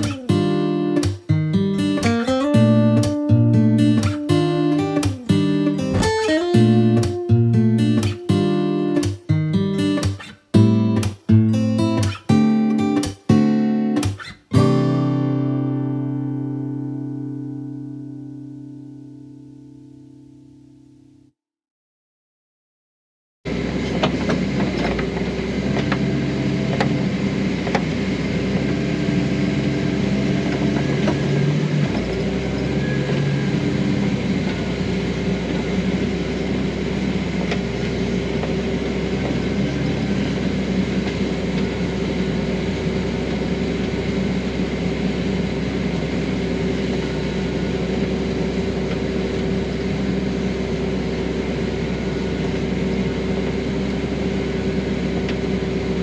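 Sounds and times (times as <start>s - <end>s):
farm machine engine humming: 23.5s - 56.0s
whining tones: 23.5s - 56.0s.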